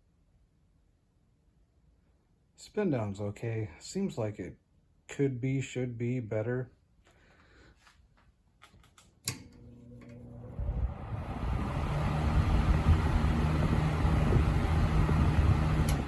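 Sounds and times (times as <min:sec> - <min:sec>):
fan switch click: 0:09.3 - 0:10.2, 0:15.8 - 0:16.0
fan motor humming: 0:09.3 - 0:16.0
rush of air from fan: 0:10.4 - 0:16.0.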